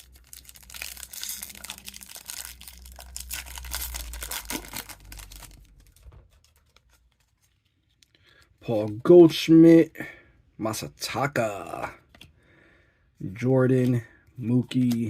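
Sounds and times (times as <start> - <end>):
foil wrapper crinkling and tearing: 0.0 - 8.4
cards rustling: 0.0 - 9.4, 13.2 - 15.0.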